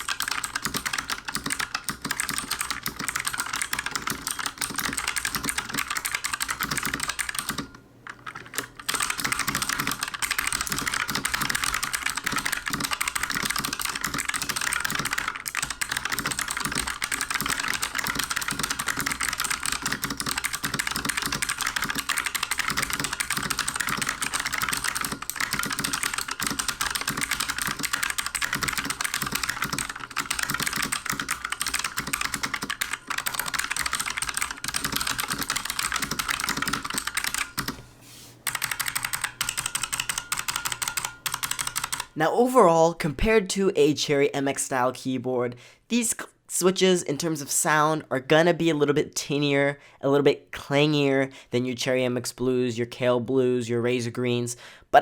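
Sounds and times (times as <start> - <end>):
clicky mechanical keyboard typing: 0.0 - 37.8, 38.4 - 42.6.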